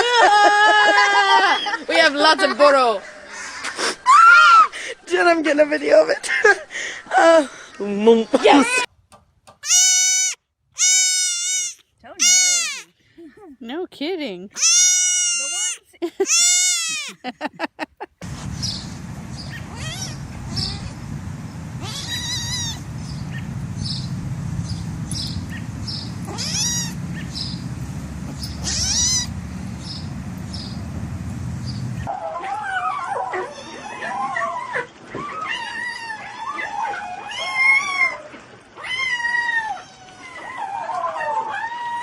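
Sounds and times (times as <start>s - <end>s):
cat meowing: 9.6s - 12.9s, 14.6s - 17.1s, 19.5s - 20.9s, 21.8s - 22.8s, 26.3s - 27.0s, 28.6s - 29.3s
low hum: 18.2s - 32.1s.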